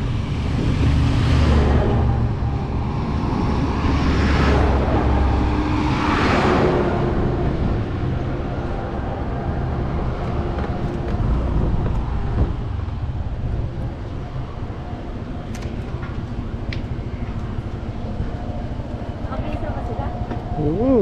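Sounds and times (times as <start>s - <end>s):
road and wind noise: 0.0s - 21.0s.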